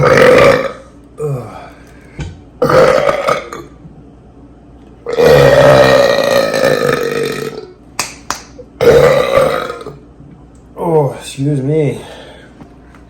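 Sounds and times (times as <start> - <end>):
man burping: 0.0 - 1.7, 2.6 - 3.7, 5.1 - 7.7, 8.8 - 10.0.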